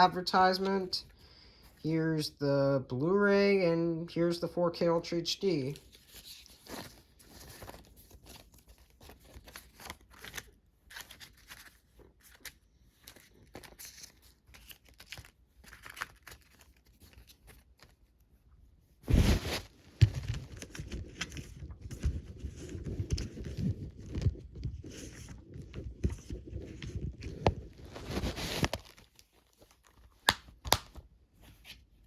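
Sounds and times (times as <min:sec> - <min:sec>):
plastic packaging rustling: 0:05.6 - 0:18.0, 0:19.1 - 0:31.7.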